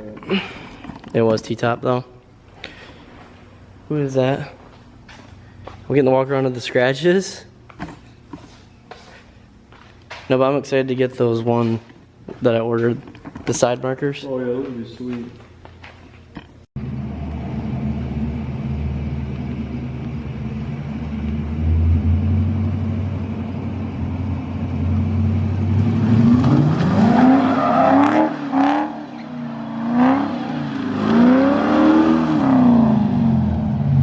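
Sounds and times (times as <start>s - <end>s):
car engine revving: 16.8s - 34.0s.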